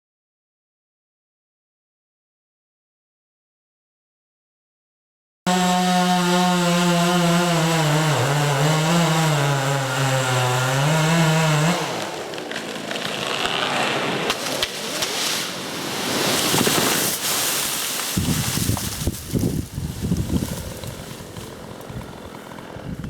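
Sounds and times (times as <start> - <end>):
chainsaw cutting: 5.5 - 23.0
crackling and rustling with snaps: 12.3 - 15.5.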